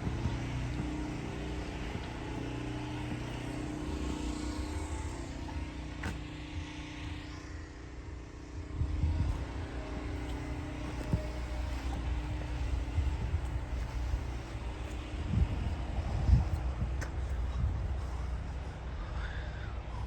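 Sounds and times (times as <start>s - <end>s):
car engine and road rumble: 0.0s - 20.0s.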